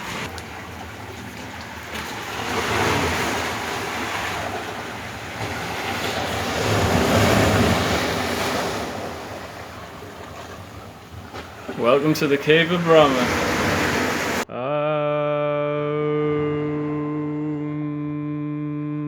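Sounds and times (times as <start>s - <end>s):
sea waves washing on shore: 0.0s - 14.5s.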